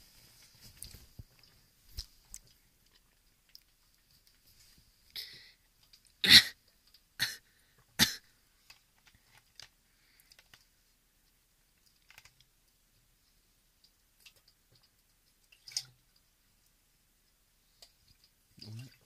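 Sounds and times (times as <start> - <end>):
person burping: 6.2 - 6.6, 8.0 - 8.2.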